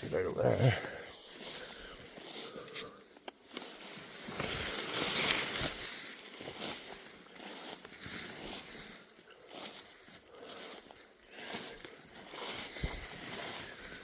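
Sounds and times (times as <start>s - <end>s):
footsteps through brush: 0.0s - 14.0s
twigs and leaves crackling: 0.0s - 14.0s.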